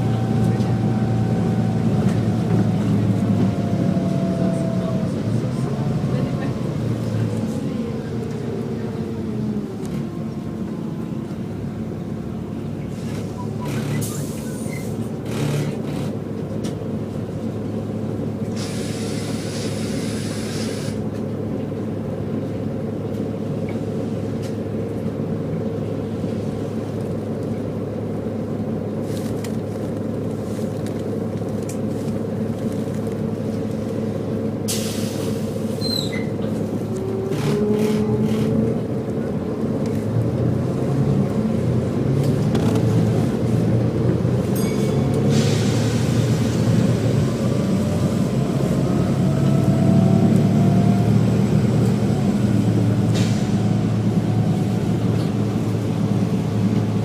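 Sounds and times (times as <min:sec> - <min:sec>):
diesel bus engine running: 0:00.0 - 0:57.0
hiss of air: 0:18.6 - 0:21.0, 0:34.7 - 0:35.7.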